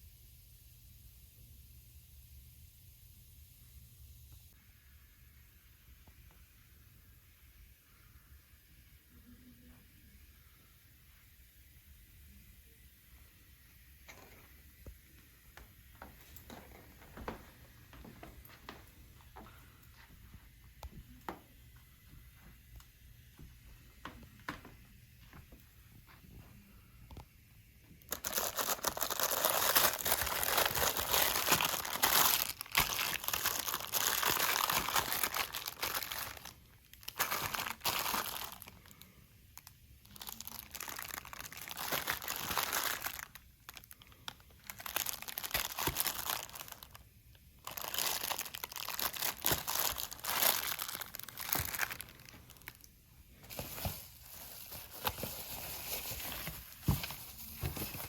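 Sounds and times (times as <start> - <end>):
packaging material crumpling: 28.1 - 47.0, 47.6 - 58.0.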